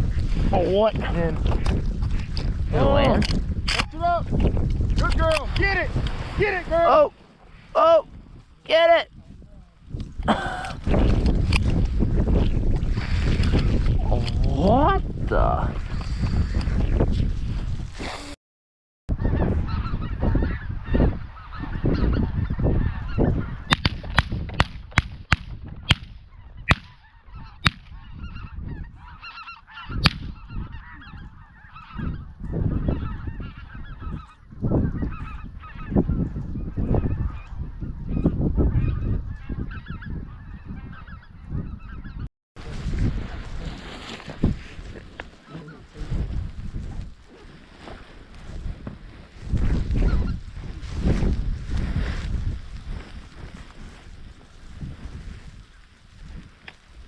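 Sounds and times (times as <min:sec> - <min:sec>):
low wind rumble: 0:00.0 - 0:18.1, 0:19.1 - 0:57.0
geese honking: 0:19.2 - 0:23.8, 0:26.4 - 0:42.3, 0:45.3 - 0:46.0.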